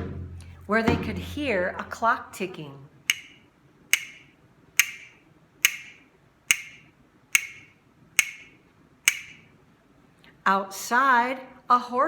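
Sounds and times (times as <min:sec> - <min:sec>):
clock ticking: 0:03.1 - 0:09.4.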